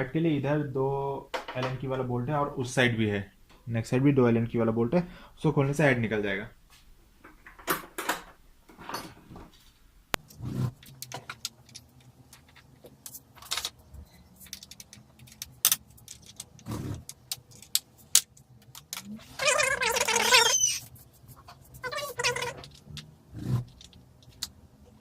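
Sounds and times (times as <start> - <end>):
wavering pitched squeal: 19.3 - 20.9.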